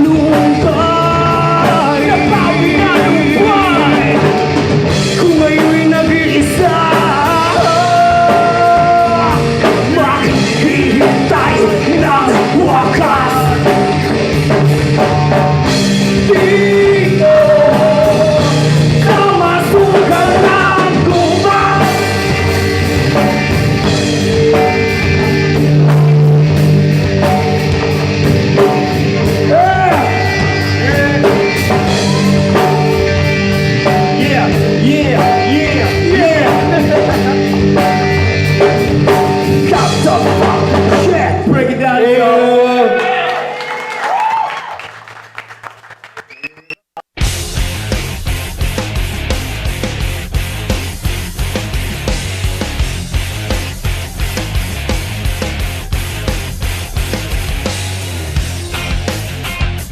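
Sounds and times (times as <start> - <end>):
person singing: 0.0 - 13.9, 16.2 - 26.2, 27.2 - 43.4
live rock band playing: 0.0 - 42.2, 47.1 - 59.9.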